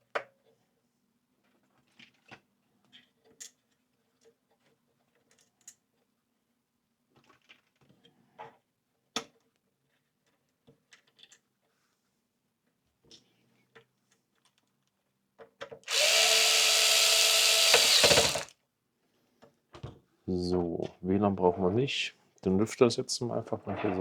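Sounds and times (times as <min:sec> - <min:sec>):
small parts clicking and knocking: 0:15.6 - 0:18.5.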